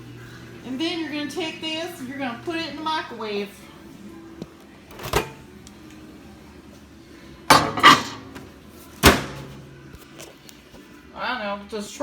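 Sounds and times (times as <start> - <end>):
dish clunking in microwave: 4.9 - 5.5, 7.5 - 9.9.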